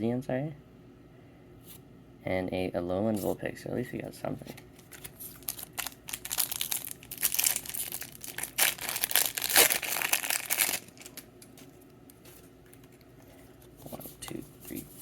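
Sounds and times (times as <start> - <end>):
foil wrapper crinkling and tearing: 4.8 - 11.3.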